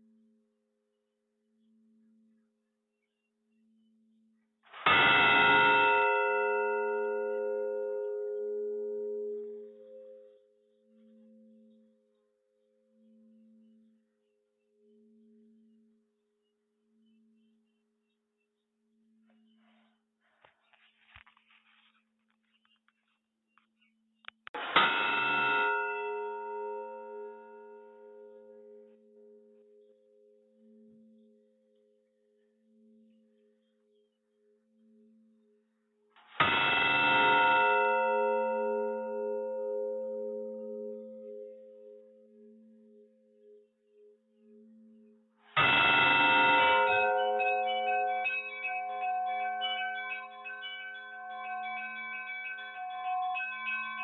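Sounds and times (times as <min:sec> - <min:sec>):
struck bell ringing: 0:45.6 - 0:54.0.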